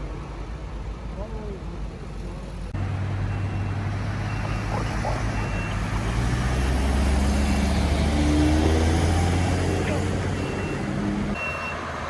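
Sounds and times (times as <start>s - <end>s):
truck engine humming: 1.7s - 11.4s
faint high beeps: 10.4s - 11.8s.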